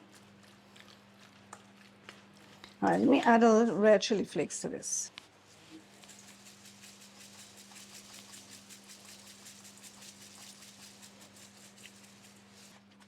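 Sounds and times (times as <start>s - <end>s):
flakes rattling in shaker jar: 5.8s - 12.8s.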